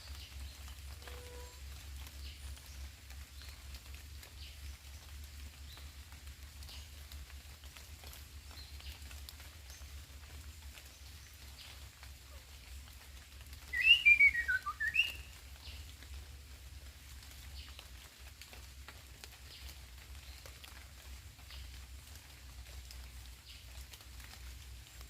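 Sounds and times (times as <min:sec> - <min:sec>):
bird whistling phrase: 0:13.8 - 0:15.2.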